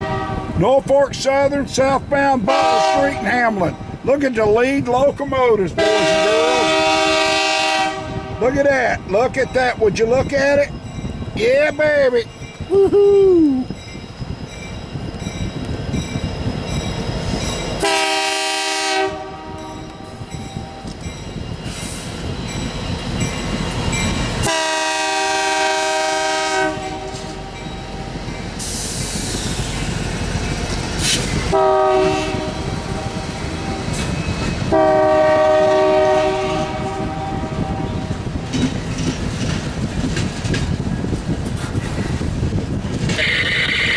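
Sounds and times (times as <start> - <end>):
locomotive air horn: 0.0 - 0.6, 2.5 - 3.9, 5.8 - 8.6, 17.8 - 20.2, 24.4 - 27.6, 31.0 - 33.8, 34.7 - 38.2
freight train rumbling past: 0.0 - 43.9.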